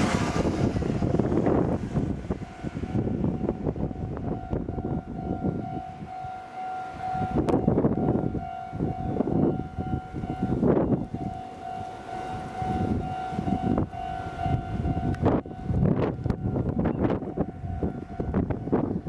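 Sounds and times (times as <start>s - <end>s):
low rumbling noise: 0.0s - 5.6s
railroad crossing bell ringing: 2.3s - 19.0s.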